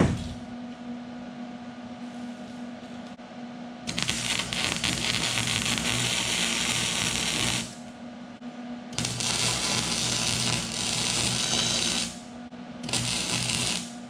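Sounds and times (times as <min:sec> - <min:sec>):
electrical hum: 0:00.0 - 0:14.0
welder crackling hiss: 0:03.9 - 0:07.8, 0:09.0 - 0:12.3, 0:12.9 - 0:14.0.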